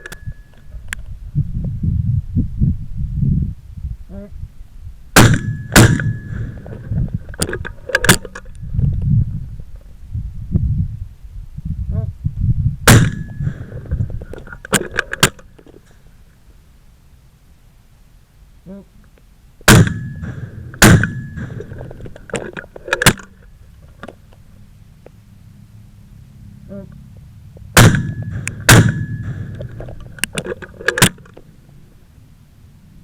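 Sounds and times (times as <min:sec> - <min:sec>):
shotgun firing: 0:05.2 - 0:06.7, 0:12.9 - 0:13.8, 0:19.7 - 0:22.0, 0:27.8 - 0:30.0
sharp metallic clacks: 0:19.7 - 0:23.3, 0:27.8 - 0:31.4.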